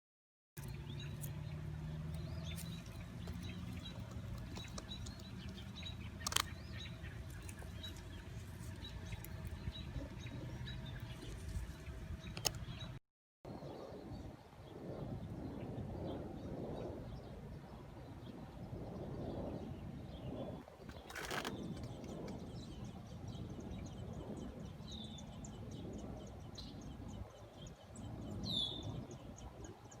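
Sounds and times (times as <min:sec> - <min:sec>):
nestling birds peeping: 0:00.6 - 0:13.0.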